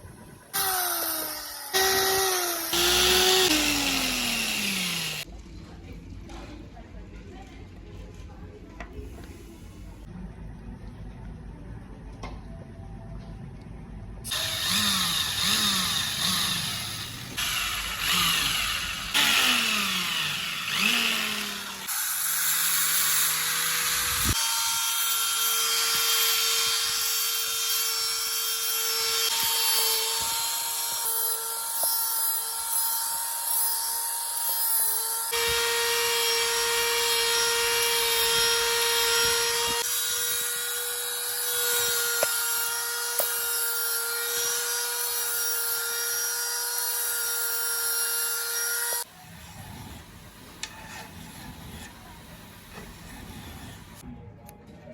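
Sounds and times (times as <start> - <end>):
small electric tool motor whining: 0.6 - 5.3, 14.3 - 49.1.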